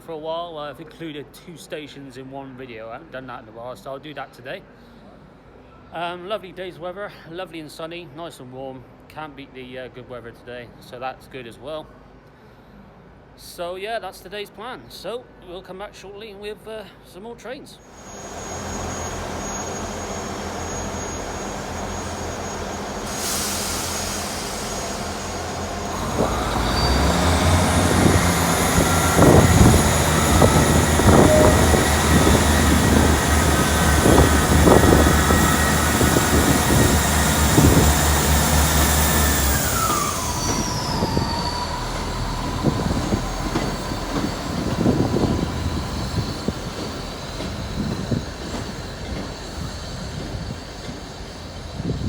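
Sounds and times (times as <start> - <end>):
high whining tones: 17.9 - 52.0
train engine hum: 17.9 - 52.0
train wheels rumbling on rail: 18.0 - 52.0.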